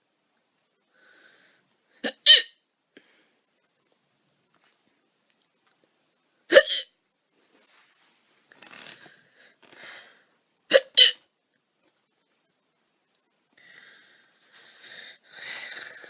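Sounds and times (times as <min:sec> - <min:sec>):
woman hiccuping: 0:02.0 - 0:02.6, 0:06.5 - 0:06.9, 0:10.7 - 0:11.2.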